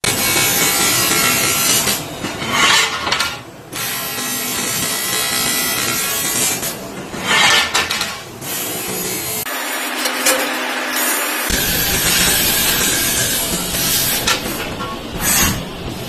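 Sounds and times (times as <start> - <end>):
laser welding hiss: 11.5 - 16.0.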